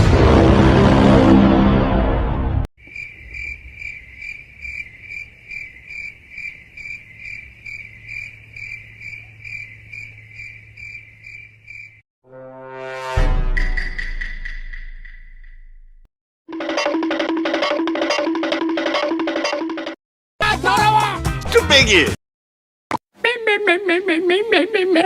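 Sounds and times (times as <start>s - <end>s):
loud rushing noise: 0.0s - 2.6s
crickets chirping: 2.8s - 12.0s.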